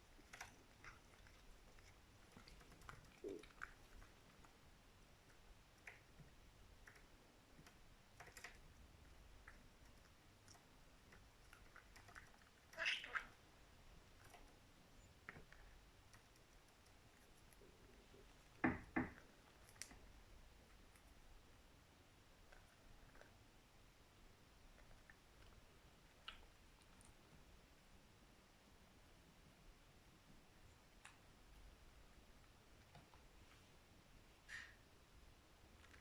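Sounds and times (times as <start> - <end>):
animals nibbling and clicking: 0.0 - 13.3, 14.0 - 18.6.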